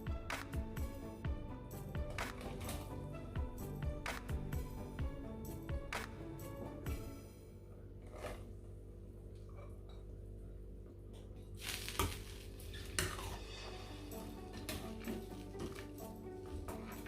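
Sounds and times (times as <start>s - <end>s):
utensils clinking against pots: 1.7s - 3.8s, 12.0s - 17.0s.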